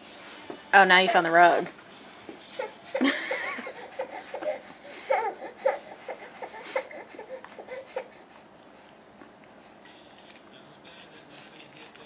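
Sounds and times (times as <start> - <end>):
baby giggling and babbling: 2.6 - 8.2.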